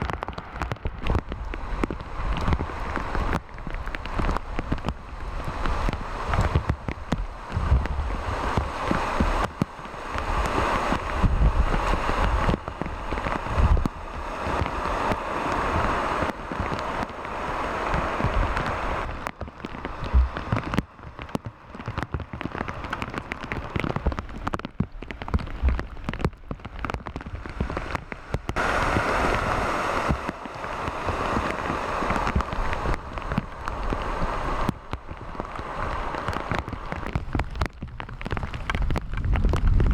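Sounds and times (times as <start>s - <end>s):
low rumbles: 0.0s - 39.9s
rain splashing on wet road: 0.0s - 39.9s.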